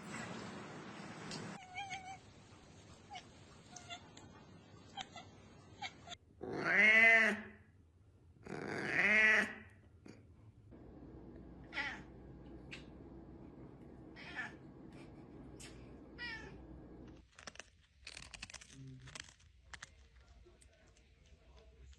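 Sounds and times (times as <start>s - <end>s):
cat meowing: 1.6s - 2.2s, 4.9s - 7.4s, 11.7s - 12.1s, 14.2s - 14.6s, 16.2s - 16.6s
steady low hum: 10.4s - 17.2s.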